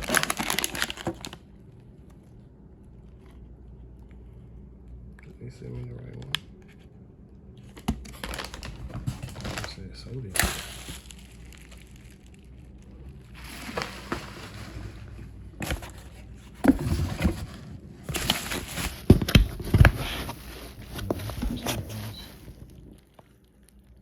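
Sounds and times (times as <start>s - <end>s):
packaging rustling: 0.0s - 1.4s, 7.7s - 23.3s
hard items knocking and thudding: 13.5s - 23.0s.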